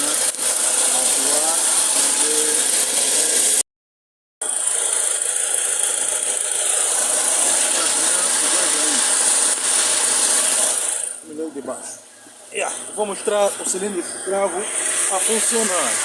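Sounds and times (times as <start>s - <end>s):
engine idling with a rattle: 0.0s - 3.6s, 4.4s - 14.0s.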